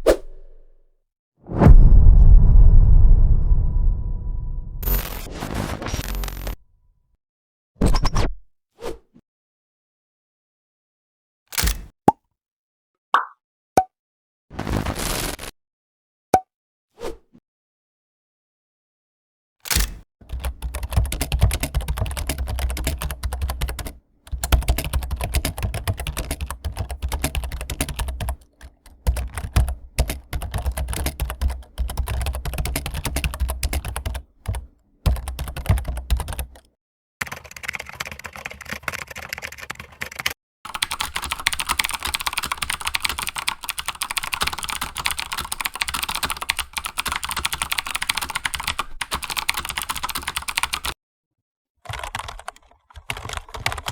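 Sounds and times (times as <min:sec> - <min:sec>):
heavy low thud: 0:01.5 - 0:04.9.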